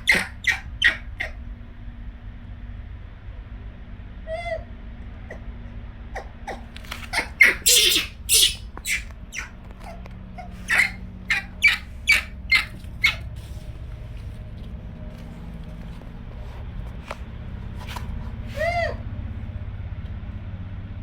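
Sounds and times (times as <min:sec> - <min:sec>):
monkey squeaky calls: 0:00.0 - 0:01.3, 0:06.2 - 0:13.3.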